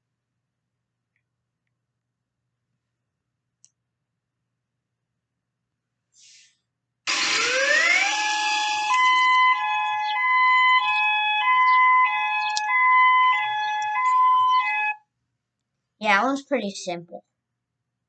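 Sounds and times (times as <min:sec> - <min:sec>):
emergency alert alarm tones: 0:07.1 - 0:15.0.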